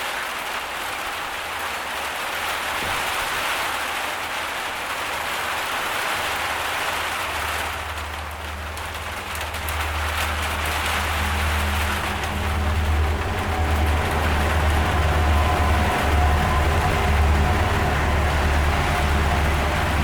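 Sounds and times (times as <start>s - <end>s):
heavy rain pouring: 0.0s - 20.0s
low steady rumble: 7.0s - 20.0s.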